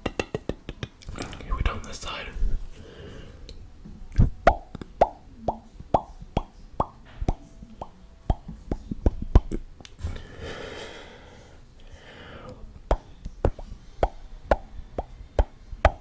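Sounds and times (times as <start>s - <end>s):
wet mouth clicks: 0.0s - 1.5s, 12.5s - 16.0s
breathy hiss: 1.1s - 3.8s, 10.0s - 12.8s
mouth pops: 3.5s - 10.0s, 12.5s - 16.0s.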